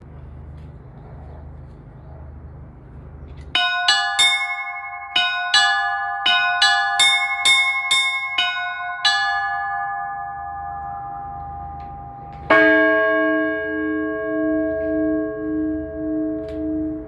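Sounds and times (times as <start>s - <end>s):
low steady rumble: 0.0s - 17.0s
church bells ringing: 3.5s - 17.0s.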